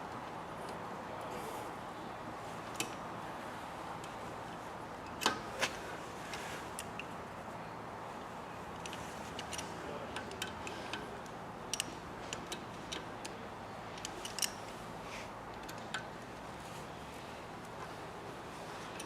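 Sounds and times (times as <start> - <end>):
metallic clicks of hand tools: 8.8 - 13.4, 14.0 - 14.7.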